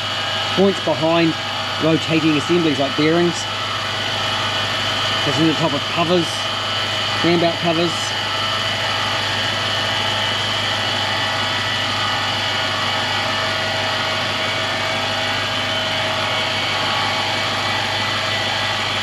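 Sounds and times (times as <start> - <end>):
high-pitched whine: 0.0 - 19.0.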